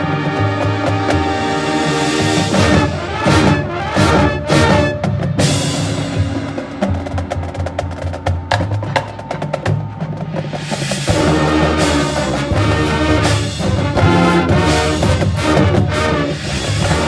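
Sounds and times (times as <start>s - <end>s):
marching band playing: 0.0s - 17.0s
sharp percussion strikes: 0.0s - 17.0s.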